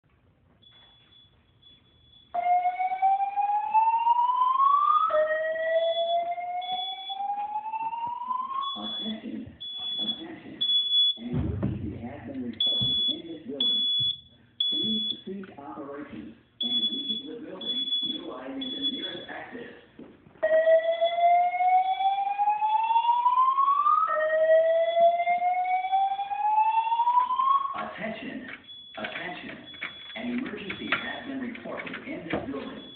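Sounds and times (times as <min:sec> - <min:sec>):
fire alarm whoop tone: 0:00.6 - 0:11.2, 0:12.6 - 0:15.3, 0:16.6 - 0:19.3, 0:20.4 - 0:27.8, 0:32.6 - 0:32.9
high steady beep: 0:08.6 - 0:11.3, 0:12.5 - 0:15.3, 0:16.6 - 0:19.4, 0:32.5 - 0:32.9.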